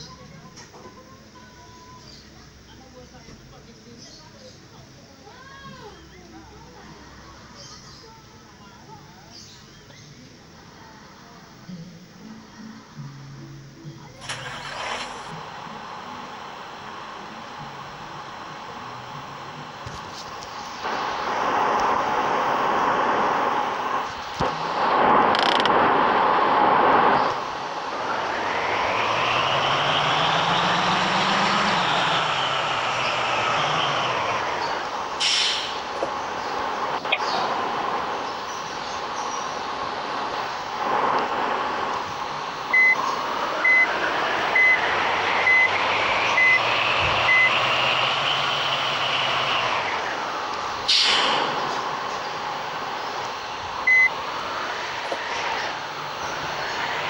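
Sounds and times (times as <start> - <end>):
vehicle noise: 14.2 - 57.0
whine rising in pitch: 14.2 - 57.0
high electronic warning beeps: 42.7 - 43.9, 44.5 - 47.6, 53.8 - 54.1.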